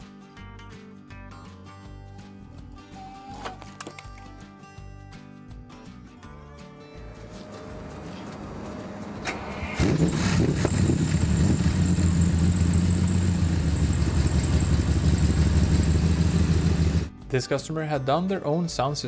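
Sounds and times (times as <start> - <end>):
car engine starting and running: 7.3 - 17.1.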